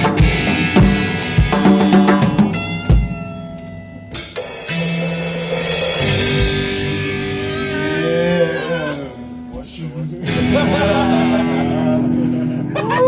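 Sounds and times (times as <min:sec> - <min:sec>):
drum hit: 0:00.0 - 0:03.2, 0:04.3 - 0:06.9
guitar notes bending: 0:00.0 - 0:13.0
rock band playing: 0:00.0 - 0:13.0
cymbal crash: 0:04.2 - 0:07.3.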